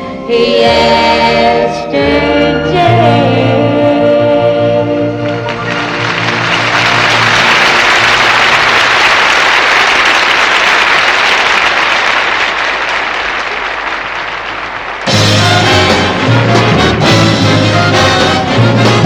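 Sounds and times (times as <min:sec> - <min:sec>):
big band brass music: 0:02.1 - 0:08.8, 0:15.0 - 0:19.0
audience applauding: 0:05.2 - 0:17.2.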